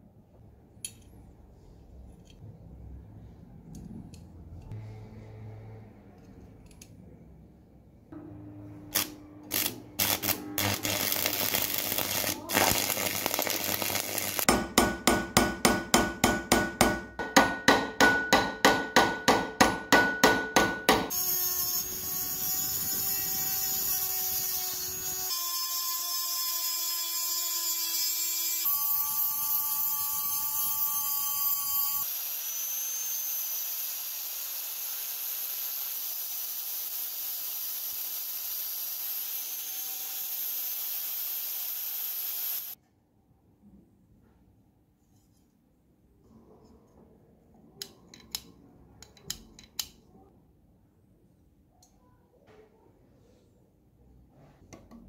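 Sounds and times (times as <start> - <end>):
small rotary tool running: 8.9 - 14.5, 21.1 - 42.8
hammer strokes on metal: 14.5 - 21.1.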